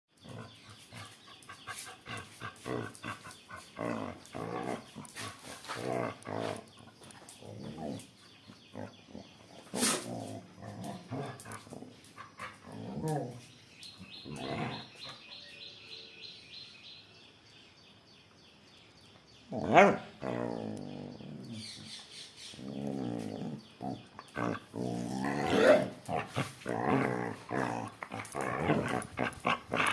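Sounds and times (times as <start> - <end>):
dogs vocalising: 0.2 - 13.4, 19.6 - 29.9.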